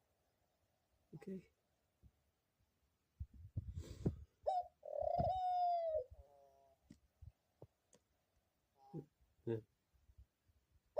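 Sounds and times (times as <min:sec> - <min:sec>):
dove cooing: 0:04.4 - 0:06.8.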